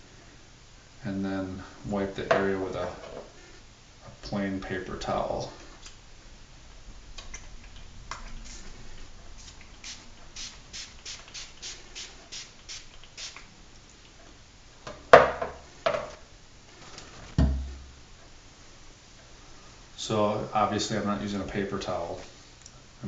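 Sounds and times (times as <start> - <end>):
spray bottle spritzing: 9.4 - 13.5
loud knocks: 17.4 - 17.9.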